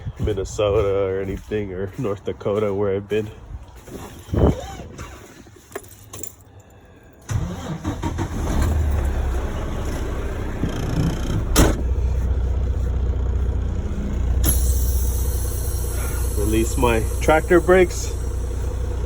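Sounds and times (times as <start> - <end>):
diesel engine starting and idling: 7.1 - 19.0.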